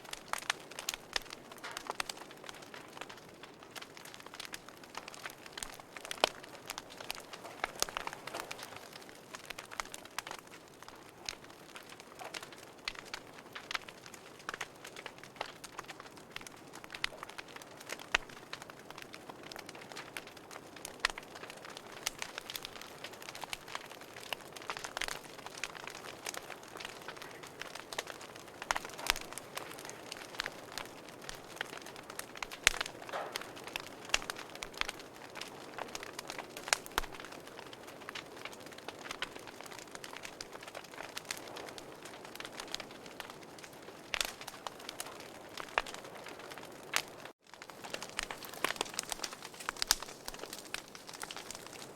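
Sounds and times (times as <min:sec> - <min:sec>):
wood fire crackling: 0:00.0 - 0:51.9.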